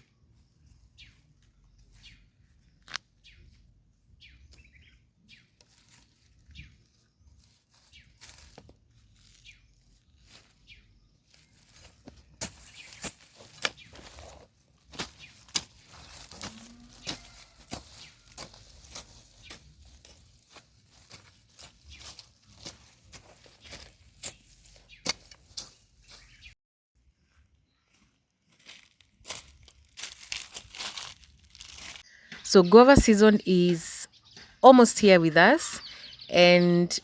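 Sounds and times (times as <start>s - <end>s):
hands working garden soil: 4.4s - 26.5s.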